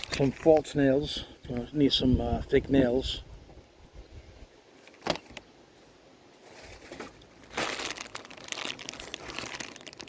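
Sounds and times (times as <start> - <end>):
plastic packaging crinkling: 0.0 - 0.7, 6.5 - 10.0.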